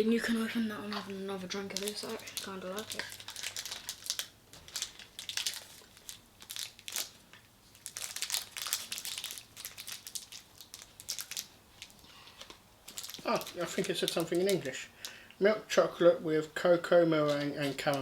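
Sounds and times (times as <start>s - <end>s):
wrapper crinkling and tearing: 1.6s - 14.7s.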